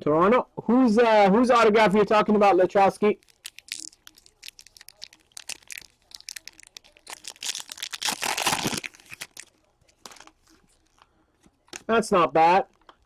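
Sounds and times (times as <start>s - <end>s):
packaging crinkling: 3.2s - 11.1s.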